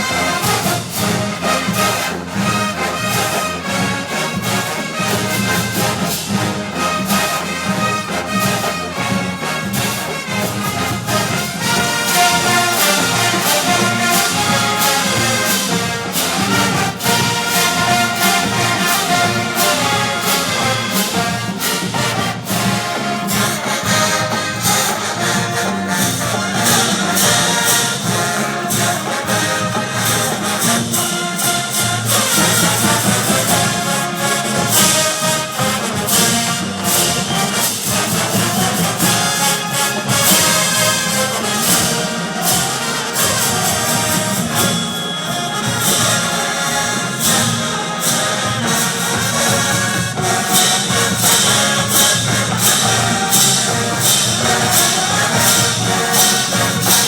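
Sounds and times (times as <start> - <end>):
brass section playing tune: 0.0 - 57.0
drum and cymbal hits: 0.0 - 57.0.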